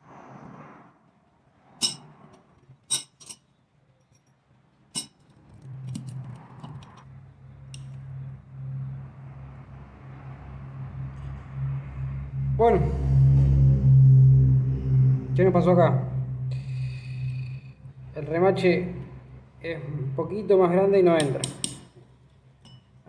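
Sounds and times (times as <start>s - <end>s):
metal parts clinking: 1.8s - 2.1s, 2.9s - 3.4s, 5.0s - 7.0s
steady low hum: 5.0s - 23.0s.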